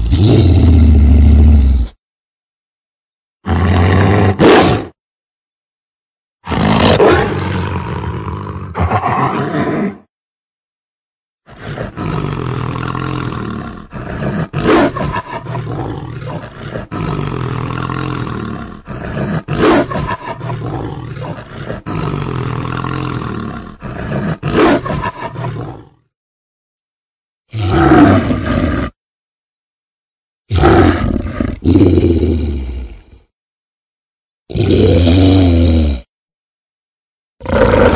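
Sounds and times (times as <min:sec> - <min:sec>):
monster growling: 0:06.5 - 0:10.1, 0:11.5 - 0:26.0, 0:27.5 - 0:29.0, 0:30.5 - 0:33.2, 0:37.4 - 0:37.9
monster roaring: 0:06.5 - 0:10.1, 0:11.5 - 0:26.0, 0:27.5 - 0:29.0, 0:30.5 - 0:33.1, 0:37.4 - 0:37.9.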